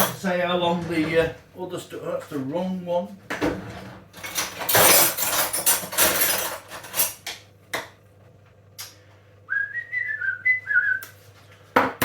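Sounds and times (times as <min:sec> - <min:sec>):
crockery and cutlery clattering: 0:00.0 - 0:01.3, 0:03.3 - 0:07.3.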